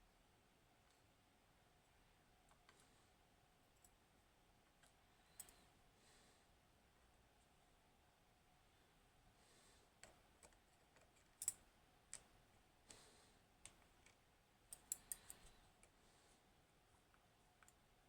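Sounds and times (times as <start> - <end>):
small metal lock parts clicking: 10.0 - 12.3, 13.6 - 15.6.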